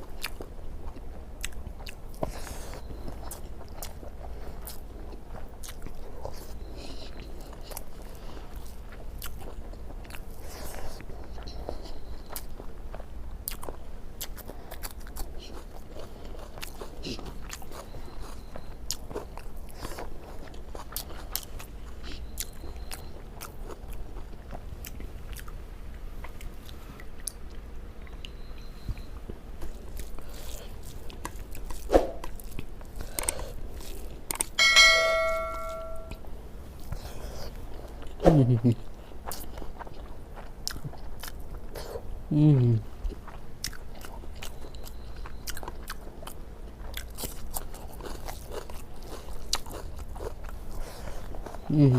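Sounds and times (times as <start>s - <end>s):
person chewing food: 0.0s - 42.2s, 42.9s - 51.9s
metal dish struck and ringing: 34.6s - 36.2s.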